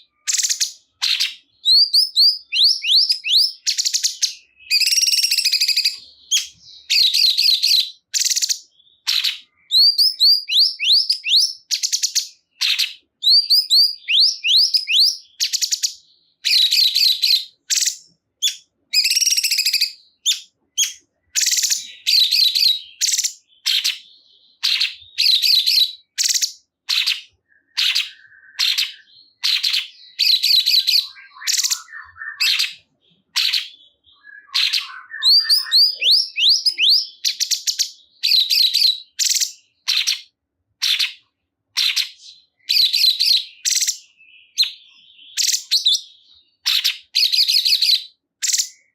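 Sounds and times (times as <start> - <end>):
songbird chirping and whistling: 0.0 - 48.9.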